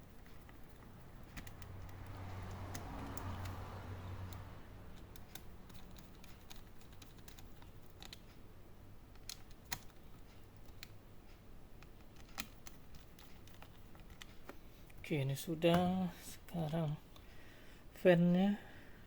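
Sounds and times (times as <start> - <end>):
clicks of laptop parts and screws: 0.2 - 8.4, 9.1 - 11.0, 11.8 - 14.6.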